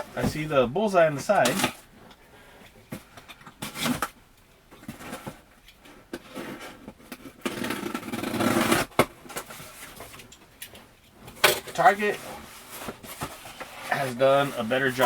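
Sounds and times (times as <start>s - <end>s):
cardboard box scraping and rustling: 11.9s - 15.0s.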